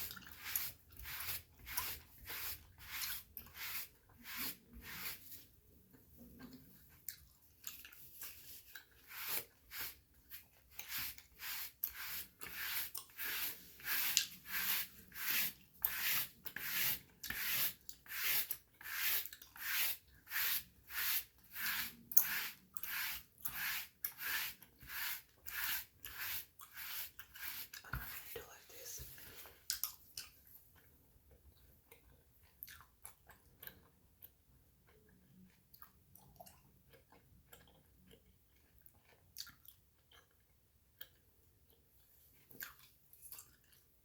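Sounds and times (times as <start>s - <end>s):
bristle brush strokes on skin: 0.0s - 5.6s, 7.8s - 29.6s.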